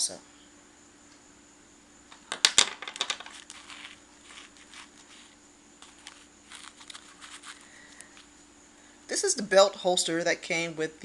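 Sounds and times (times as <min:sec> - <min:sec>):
small objects clicking and knocking: 0:02.1 - 0:08.3
rustling: 0:03.1 - 0:08.3.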